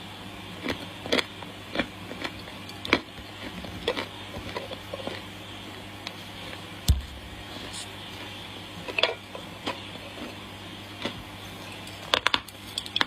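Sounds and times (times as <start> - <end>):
chewing crunchy clay: 0.6 - 5.3.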